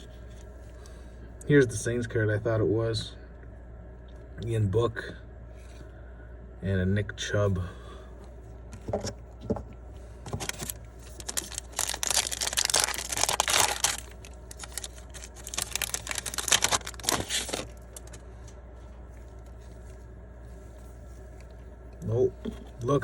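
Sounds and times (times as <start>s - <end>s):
wrapper tearing and crinkling: 10.3s - 18.2s.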